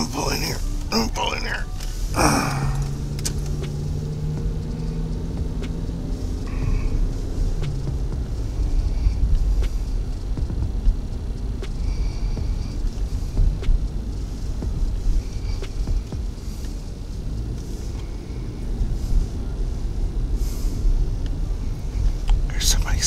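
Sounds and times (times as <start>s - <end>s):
car engine and tyres rumbling: 0.0s - 23.0s
faint ticks: 2.8s - 18.2s.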